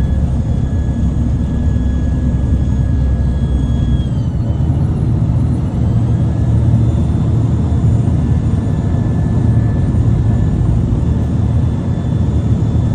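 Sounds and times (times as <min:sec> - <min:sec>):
truck engine rumbling: 0:00.0 - 0:06.8.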